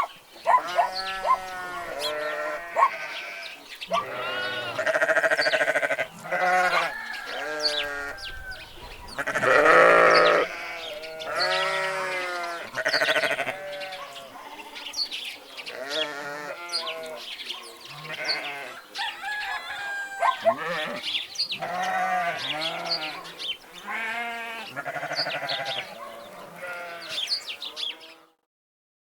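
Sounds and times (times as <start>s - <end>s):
goats or sheep bleating: 0.5s - 8.3s, 9.2s - 15.0s, 15.7s - 17.2s, 17.9s - 18.8s, 19.8s - 28.4s.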